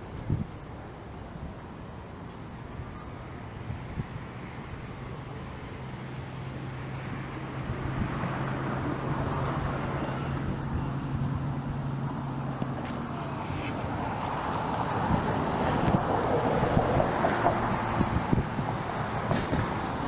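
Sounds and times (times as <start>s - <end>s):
noisy rush: 0.0s - 20.0s
vehicle engine hum: 0.0s - 20.0s.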